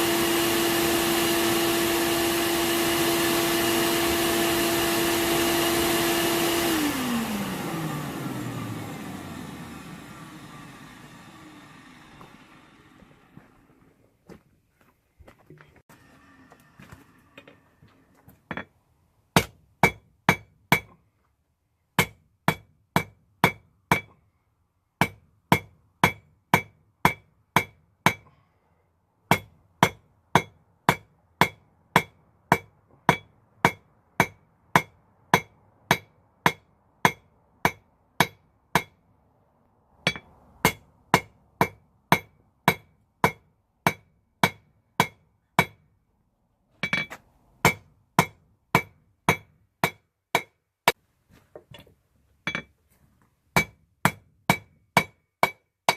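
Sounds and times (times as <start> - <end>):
hammer striking metal on anvil: 19.4 - 21.0, 22.0 - 24.2, 25.0 - 28.3, 29.3 - 39.0, 40.0 - 45.8, 46.8 - 50.6, 52.5 - 52.7, 53.6 - 55.9.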